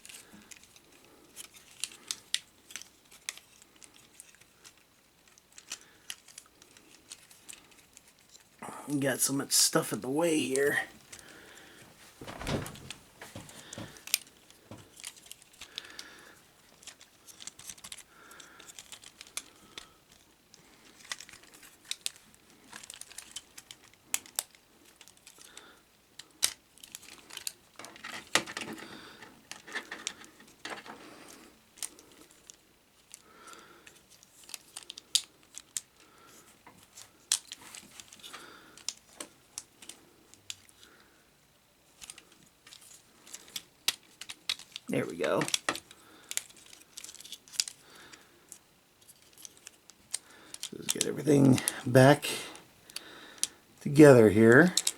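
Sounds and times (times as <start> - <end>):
plastic scraping and rubbing: 11.0 - 14.9
plastic clicks and snaps: 54.7 - 54.9.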